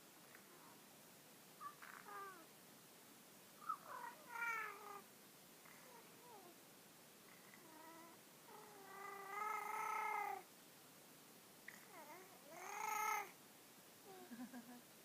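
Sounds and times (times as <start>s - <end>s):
cat meowing: 3.7s - 5.0s.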